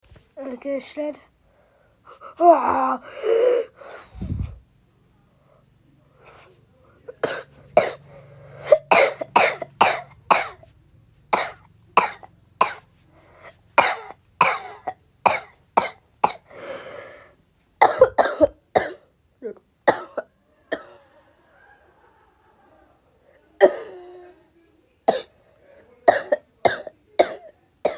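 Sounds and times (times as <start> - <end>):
person coughing: 7.2 - 8.0, 8.6 - 10.6, 17.8 - 19.0, 23.6 - 24.1, 26.1 - 27.9.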